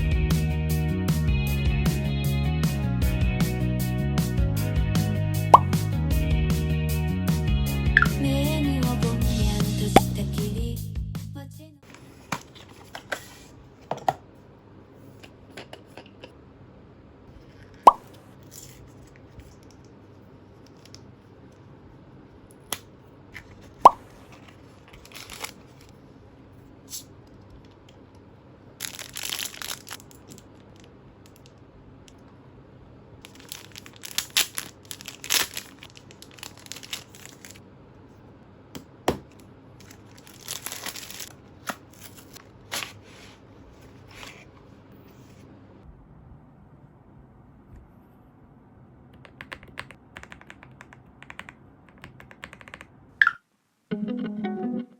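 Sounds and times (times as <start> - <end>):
rustling and crinkling: 11.8 - 14.1, 17.3 - 21.7, 23.3 - 26.0, 28.8 - 31.5, 33.3 - 37.6, 39.2 - 45.5.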